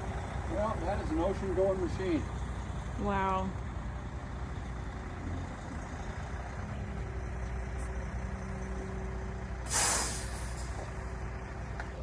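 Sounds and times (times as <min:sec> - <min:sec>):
heavy truck engine running: 0:00.0 - 0:12.0
air brakes hissing: 0:09.6 - 0:11.0.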